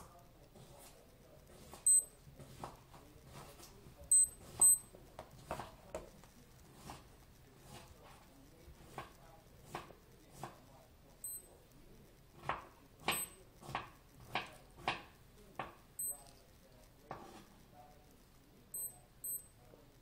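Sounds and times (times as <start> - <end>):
digital wristwatch beeping: 1.8 - 2.3, 4.0 - 5.0, 11.2 - 11.7, 13.1 - 13.4, 15.9 - 16.6, 18.7 - 19.6.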